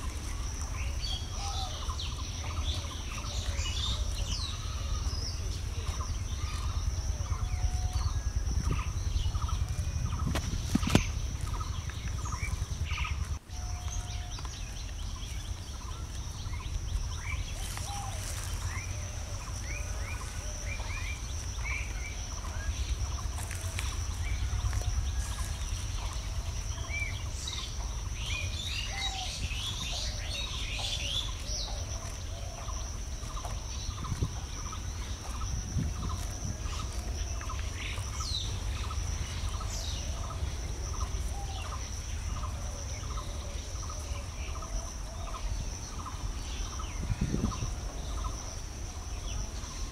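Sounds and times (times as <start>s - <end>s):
low rumble: 0.0s - 30.6s
birds chirping and calling: 0.0s - 49.9s.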